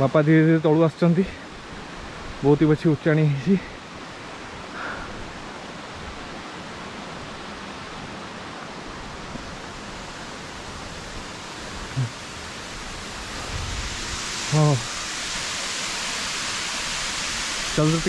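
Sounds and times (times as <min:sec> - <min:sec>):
waterfall rushing: 0:10.8 - 0:18.0.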